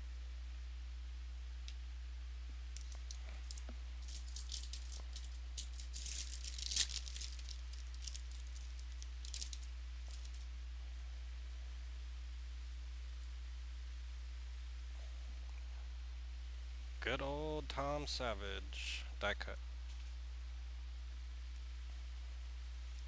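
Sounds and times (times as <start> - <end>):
low electrical hum: 0.0 - 23.0
cards and packaging crinkling: 2.7 - 10.5.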